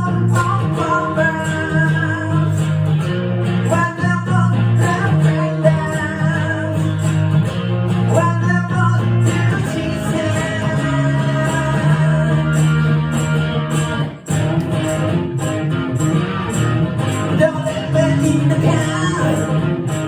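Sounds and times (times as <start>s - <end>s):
person singing: 0.0s - 2.8s, 3.6s - 7.2s, 8.0s - 13.7s, 17.1s - 20.0s
guitar playing chords: 0.0s - 20.0s.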